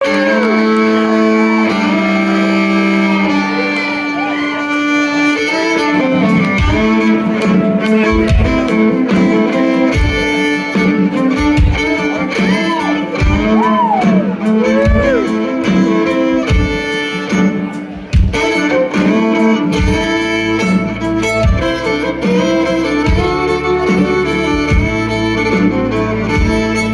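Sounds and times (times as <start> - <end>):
fiddle with sliding notes: 0.0 - 26.9
guitar chords: 0.0 - 26.9
low drum beat: 13.1 - 15.4.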